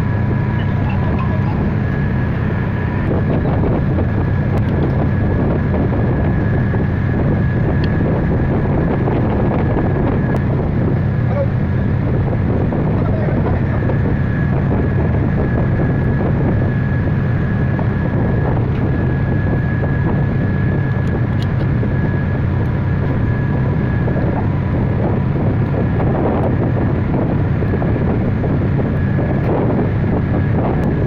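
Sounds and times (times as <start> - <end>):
faint high whine: 0.0 - 3.7
machine drone: 0.0 - 31.0.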